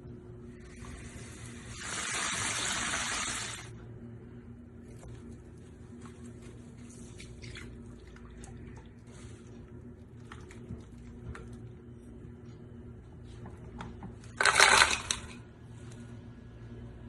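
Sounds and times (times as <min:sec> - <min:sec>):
steady low hum: 0:00.0 - 0:01.9, 0:03.6 - 0:17.0
water splashing in a sink: 0:00.7 - 0:03.7, 0:06.9 - 0:09.1.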